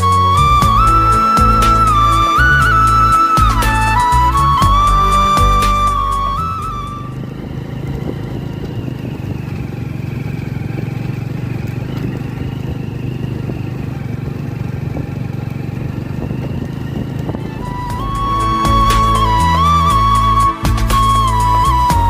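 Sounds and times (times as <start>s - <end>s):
road noise: 0.0s - 22.0s
vehicle engine humming: 0.0s - 22.0s.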